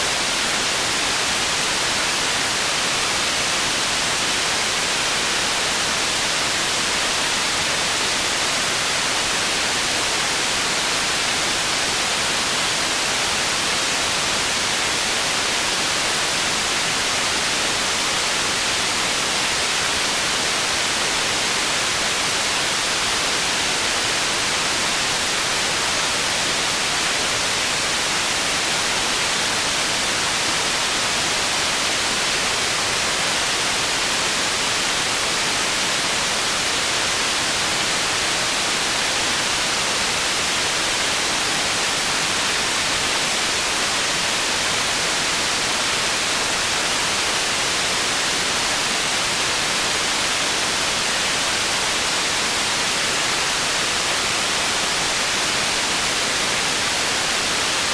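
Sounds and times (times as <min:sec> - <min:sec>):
white noise hiss: 0:00.0 - 0:57.9.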